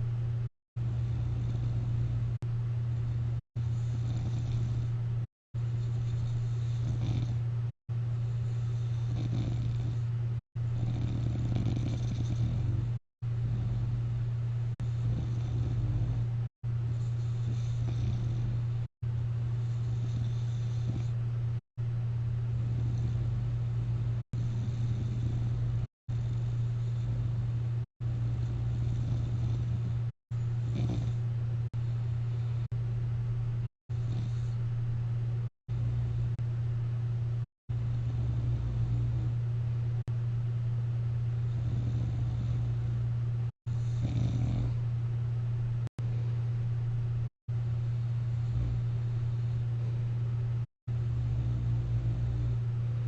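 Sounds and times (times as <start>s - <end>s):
steady low hum: 0.0s - 53.0s
person snoring: 0.9s - 2.2s, 3.7s - 5.0s, 5.9s - 7.4s, 8.3s - 10.1s, 10.8s - 13.9s, 14.8s - 16.3s, 17.0s - 18.6s, 19.6s - 21.2s, 24.4s - 27.4s, 28.2s - 30.0s, 30.7s - 31.2s, 37.9s - 39.4s, 41.4s - 43.0s, 43.8s - 44.8s, 51.2s - 52.6s.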